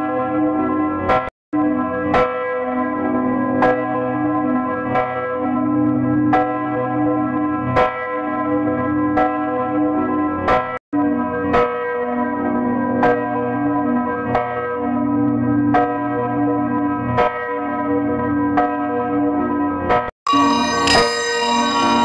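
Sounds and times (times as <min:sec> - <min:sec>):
church bell tolling: 0:20.3 - 0:22.0.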